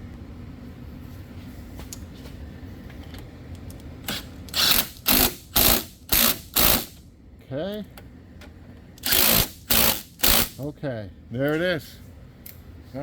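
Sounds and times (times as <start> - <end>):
low steady hum: 0.0 - 13.0
ratchet clicking: 4.1 - 7.0, 9.0 - 10.6.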